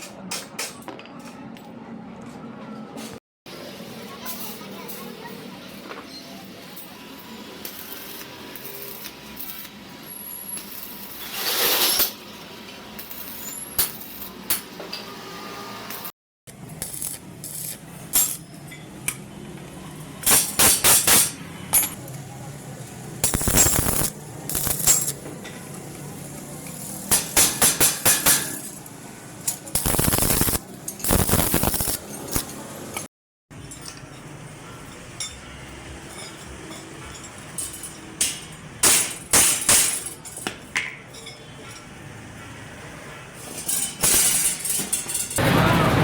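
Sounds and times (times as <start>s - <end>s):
steady background noise: 12.0s - 46.0s.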